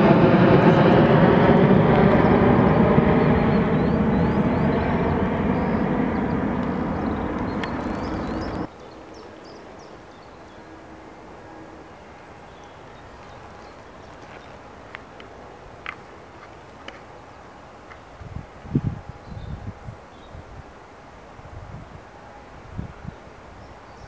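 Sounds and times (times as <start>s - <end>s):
jet airliner passing: 0.0s - 19.9s
faint bird chirps: 3.3s - 10.8s.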